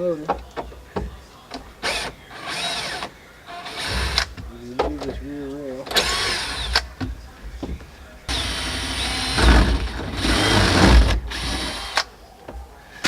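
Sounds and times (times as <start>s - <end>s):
power drill running: 5.9s - 6.8s, 8.3s - 12.0s.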